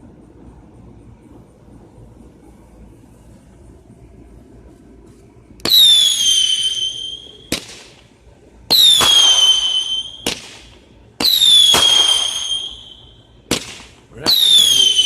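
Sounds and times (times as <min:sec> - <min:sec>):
firework whistle: 0:05.6 - 0:07.7, 0:08.7 - 0:13.4, 0:14.2 - 0:15.0
firework bang: 0:08.7 - 0:15.0.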